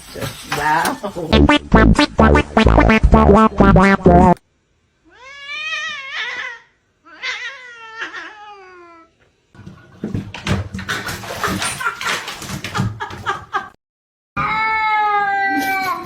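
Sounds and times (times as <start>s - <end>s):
rustling and knocking: 9.6s - 13.6s.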